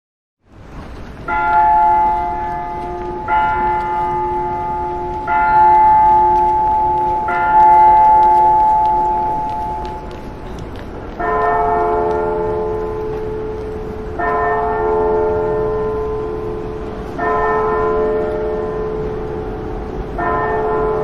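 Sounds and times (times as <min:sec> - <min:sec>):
bell tolling: 0:01.3 - 0:10.1.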